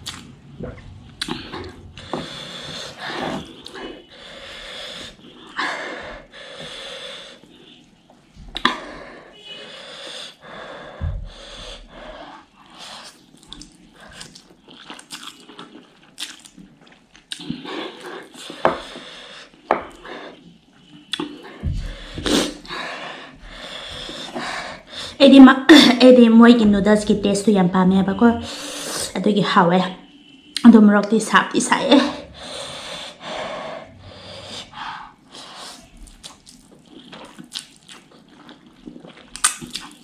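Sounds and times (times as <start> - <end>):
wet chewing and mouth smacks: 0.0 - 2.1, 12.7 - 18.9, 19.5 - 22.7, 35.3 - 40.0.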